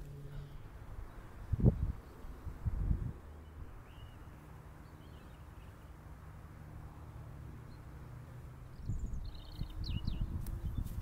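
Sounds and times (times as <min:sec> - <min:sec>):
small bird chirps: 0:08.7 - 0:11.0.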